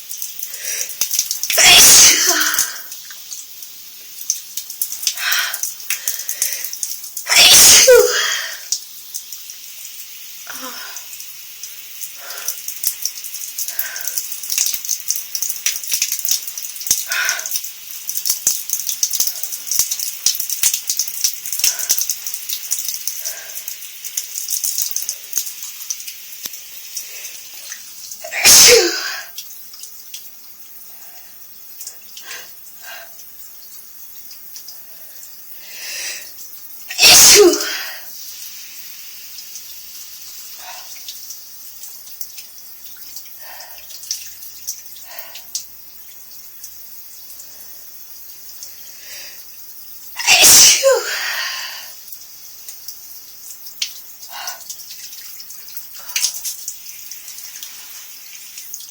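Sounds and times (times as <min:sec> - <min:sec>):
shower spray hissing: 0:00.0 - 0:29.4, 0:34.2 - 0:42.7, 0:46.4 - 0:54.7, 0:55.7 - 0:58.9
person sneezing: 0:01.6 - 0:02.9, 0:07.3 - 0:08.7, 0:28.2 - 0:29.3, 0:36.9 - 0:38.1, 0:50.2 - 0:51.9.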